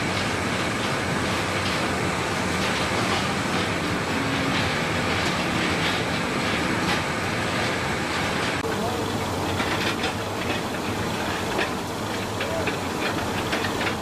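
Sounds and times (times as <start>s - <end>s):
machinery rumbling and humming: 0.0s - 14.0s
light irregular clatter: 0.1s - 8.6s, 9.5s - 14.0s.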